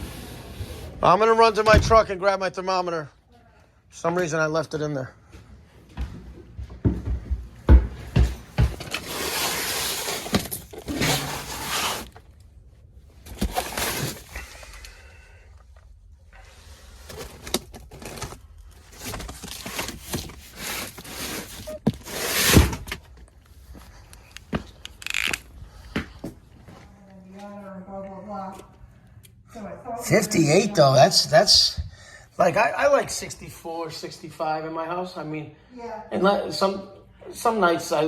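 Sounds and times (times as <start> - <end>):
knocks and thumps: 6.0 - 9.0
rustling scrapes: 8.8 - 12.3, 16.4 - 22.8.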